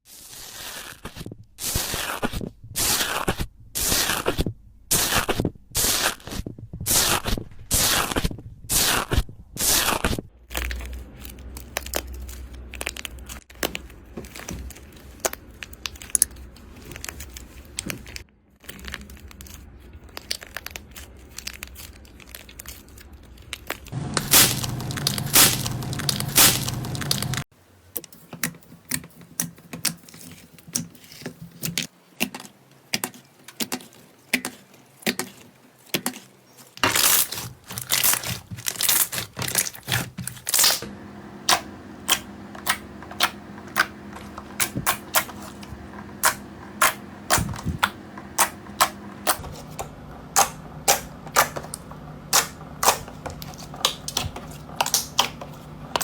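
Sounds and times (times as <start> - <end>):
slime crackling and popping: 6.9 - 27.4, 32.9 - 40.8.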